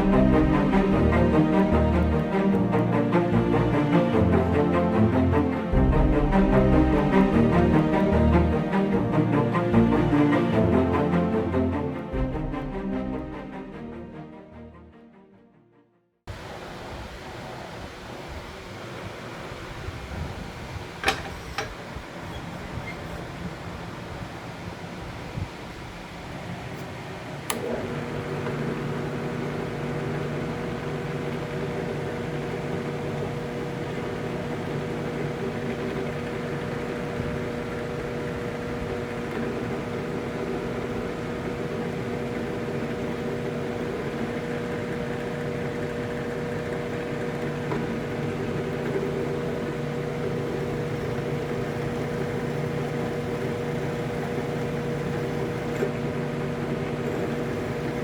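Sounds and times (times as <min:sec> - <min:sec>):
machine hum with hiss: 0:16.3 - 0:58.0
switch click: 0:27.5 - 0:27.7.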